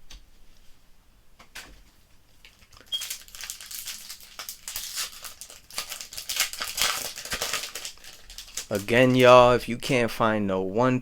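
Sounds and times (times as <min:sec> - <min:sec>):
plastic wrapper crinkling: 0:02.4 - 0:09.6.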